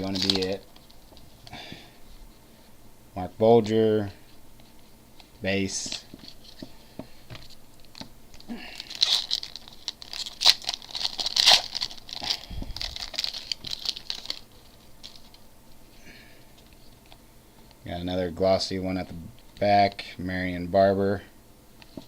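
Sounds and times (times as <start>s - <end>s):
foil wrapper tearing and crinkling: 0.0s - 1.0s, 7.4s - 15.4s.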